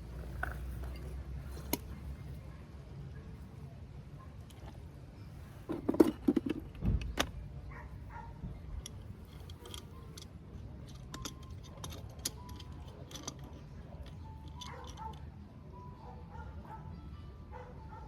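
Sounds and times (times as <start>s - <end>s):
metal objects clinking: 8.8s - 15.2s.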